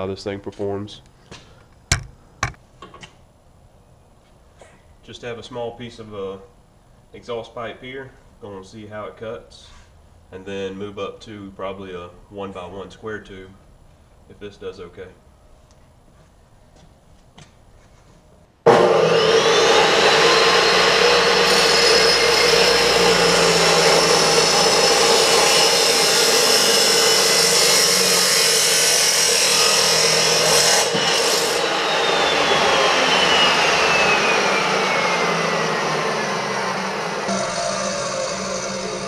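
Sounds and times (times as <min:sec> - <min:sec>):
chop saw whine: 0:18.7 - 0:39.0
saw grinding through steel pipe: 0:18.7 - 0:39.0.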